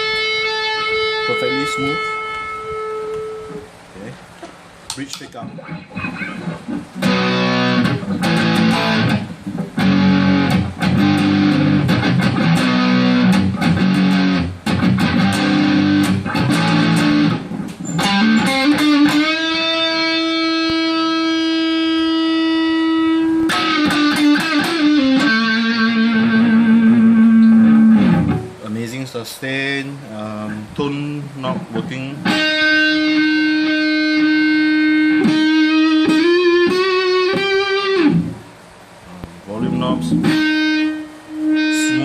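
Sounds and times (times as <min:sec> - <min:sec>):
electric guitar held note: 0:00.0 - 0:03.7, 0:18.0 - 0:28.6, 0:39.1 - 0:42.0
electric guitar strumming chords: 0:00.0 - 0:03.8, 0:05.5 - 0:28.7, 0:31.4 - 0:42.0.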